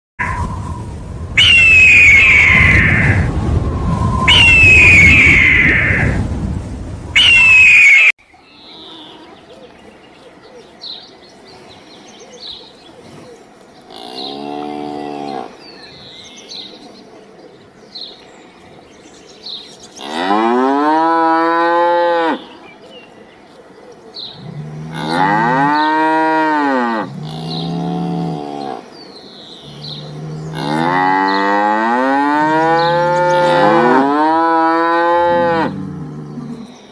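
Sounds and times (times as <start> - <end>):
cow mooing: 24.4 - 28.8, 29.7 - 36.6.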